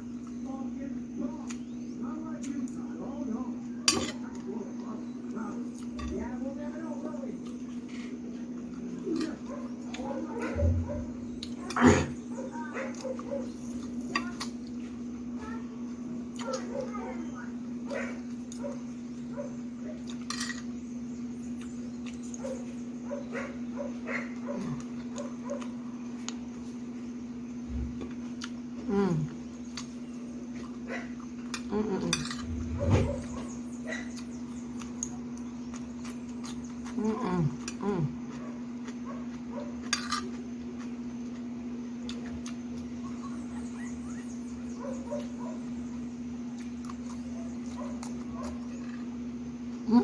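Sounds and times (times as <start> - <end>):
steady hum: 0.0 - 50.0
person chewing and eating: 18.1 - 20.8, 21.4 - 26.9, 27.9 - 44.2, 44.9 - 50.0
dog barking in yaps: 22.4 - 25.7, 44.8 - 45.7.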